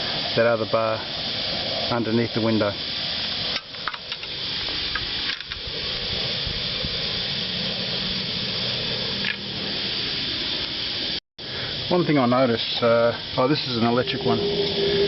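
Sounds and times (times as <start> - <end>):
steady background hiss: 0.0 - 15.0.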